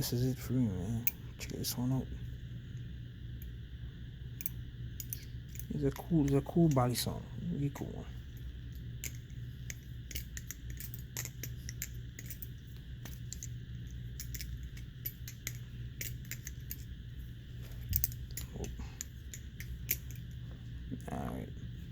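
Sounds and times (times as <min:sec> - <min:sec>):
low steady hum: 0:00.0 - 0:21.9.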